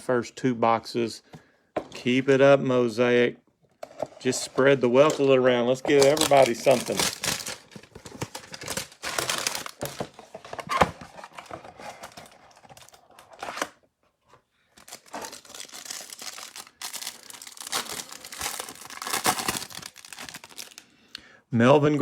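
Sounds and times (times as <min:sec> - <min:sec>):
plastic wrapping tearing and crinkling: 0:05.9 - 0:13.7, 0:14.7 - 0:20.8.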